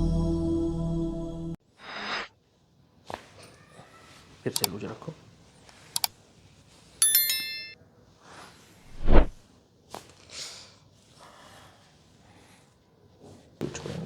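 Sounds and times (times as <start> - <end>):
soft rustles: 3.0 - 7.0
bright bell-like ding: 7.0 - 7.8.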